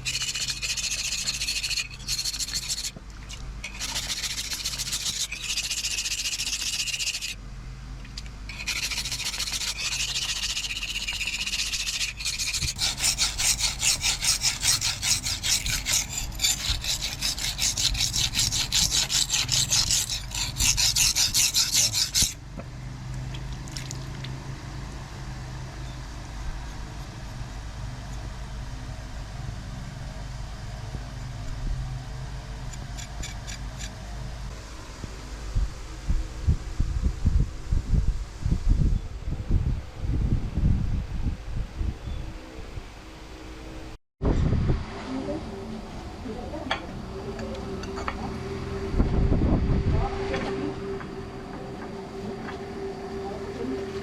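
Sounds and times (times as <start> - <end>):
back-and-forth filing strokes: 0.0 - 3.0, 3.6 - 7.4, 8.5 - 22.4
file rasping on metal: 0.0 - 3.0, 3.6 - 7.4, 8.5 - 22.4, 32.7 - 34.0
low hum: 24.4 - 54.0.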